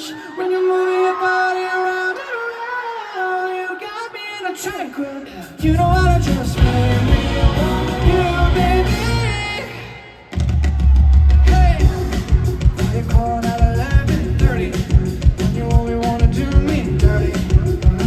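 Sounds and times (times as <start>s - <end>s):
live pop song with singing: 0.0s - 18.0s
band with bass and drums: 5.6s - 18.0s.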